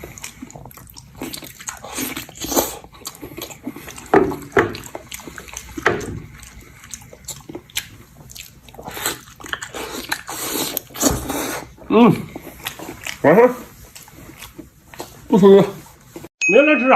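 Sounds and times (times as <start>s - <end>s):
person chewing crunchy food: 0.0s - 16.3s.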